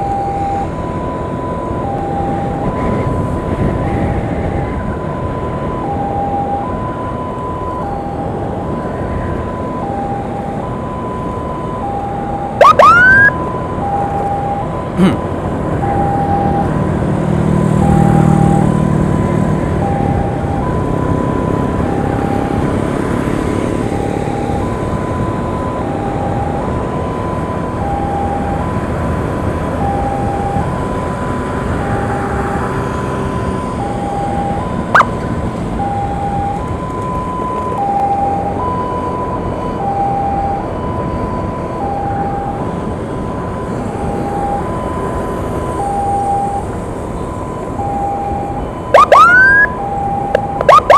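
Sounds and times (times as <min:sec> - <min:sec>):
motorcycle road and wind noise: 0:00.0 - 0:50.9
two-tone emergency siren: 0:00.0 - 0:50.9.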